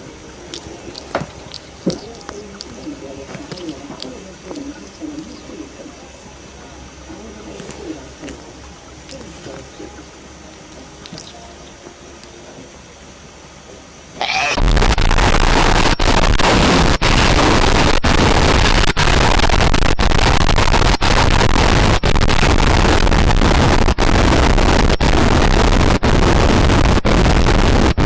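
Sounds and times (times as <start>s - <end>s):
loud distorted noise: 14.2s - 28.0s.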